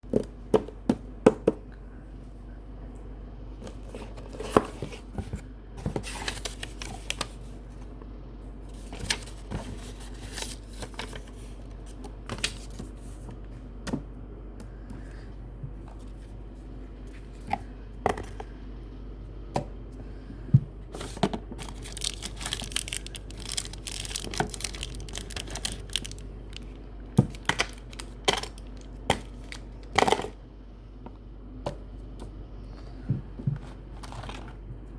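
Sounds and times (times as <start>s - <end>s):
packaging rustling and crinkling: 3.7s - 7.5s, 8.7s - 13.1s, 21.0s - 30.3s, 33.6s - 34.7s.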